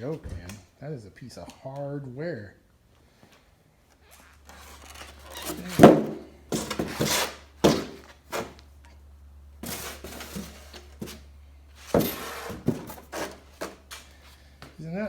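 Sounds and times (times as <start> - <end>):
parts knocking and thunking: 4.5 - 8.6, 9.6 - 14.0.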